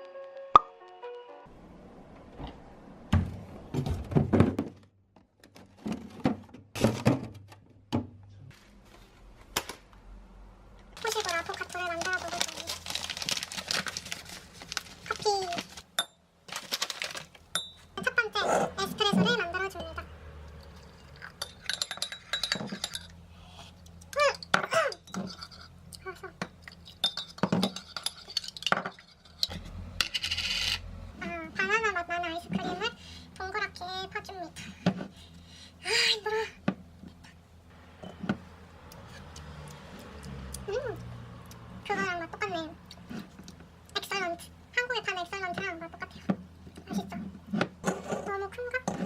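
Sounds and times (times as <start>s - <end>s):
glass and dishes clinking: 21.0s - 23.1s.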